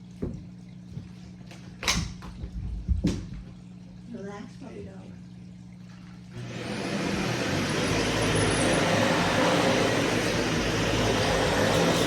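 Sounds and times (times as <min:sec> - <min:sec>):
vacuum cleaner motor whine: 0:06.3 - 0:12.0.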